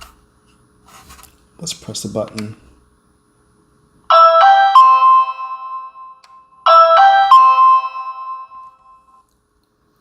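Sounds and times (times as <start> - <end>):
three-note electronic doorbell chime: 4.1 - 9.2.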